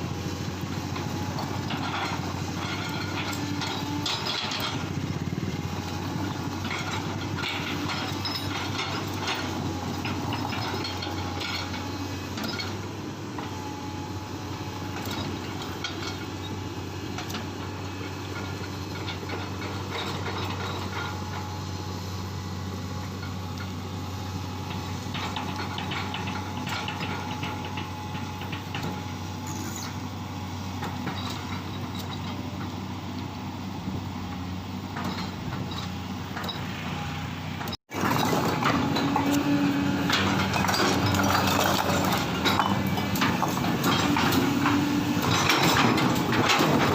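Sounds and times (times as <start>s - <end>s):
excavator diesel engine running: 0.0s - 46.9s
metallic clanks and knocks: 1.0s - 5.0s, 5.9s - 12.8s, 17.2s - 21.5s, 24.7s - 30.0s, 34.9s - 36.7s, 37.6s - 46.9s.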